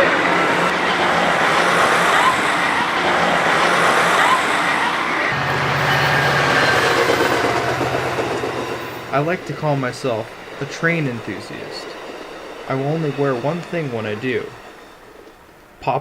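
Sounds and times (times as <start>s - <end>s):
train rushing past: 0.0s - 16.0s.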